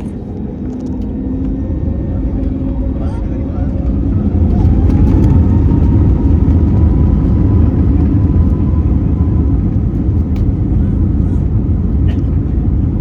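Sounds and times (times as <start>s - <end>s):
faint engine whine: 0.0s - 13.0s
jet engines rumbling: 0.0s - 13.0s.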